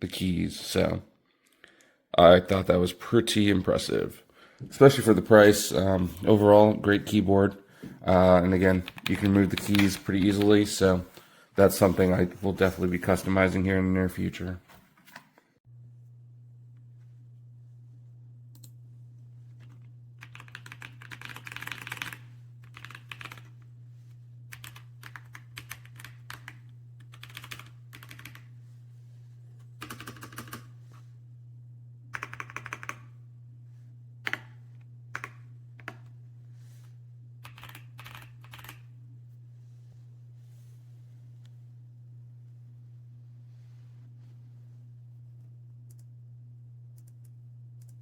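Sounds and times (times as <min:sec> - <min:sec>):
mechanical keyboard typing: 0:08.7 - 0:10.6, 0:20.2 - 0:23.5, 0:24.5 - 0:28.5, 0:29.8 - 0:30.7, 0:32.2 - 0:33.1, 0:35.2 - 0:36.0, 0:37.4 - 0:38.8
low hum: 0:30.6 - 0:32.1, 0:33.0 - 0:48.0.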